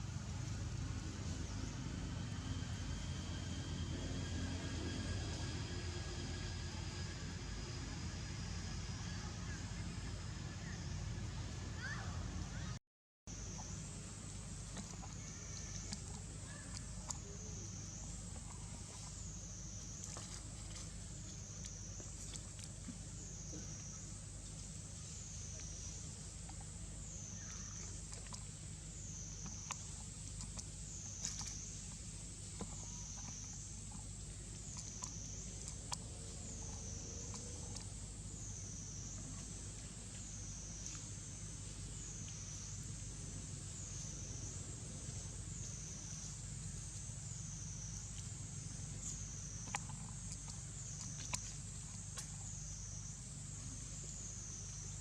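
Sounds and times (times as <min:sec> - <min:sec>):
high insect drone: 0:00.0 - 0:12.7, 0:13.3 - 0:55.0
low rumble: 0:00.0 - 0:12.8.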